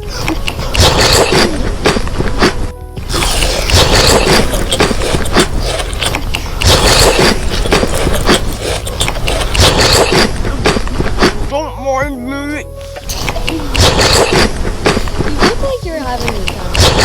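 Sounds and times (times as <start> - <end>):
crunchy food being chewed: 0.0 - 11.6, 12.8 - 17.0.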